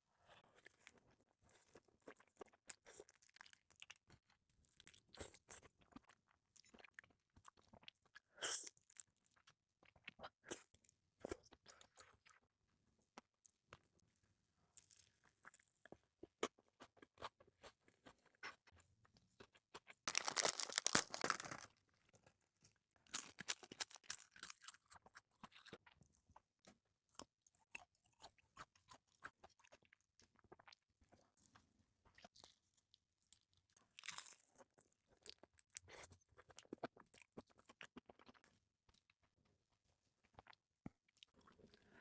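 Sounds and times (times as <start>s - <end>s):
wet chewing: 19.4s - 21.7s.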